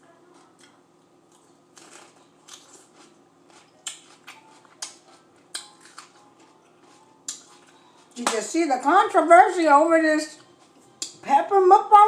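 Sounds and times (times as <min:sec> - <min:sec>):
crisp crunches of chewing peppers: 0:00.4 - 0:07.9.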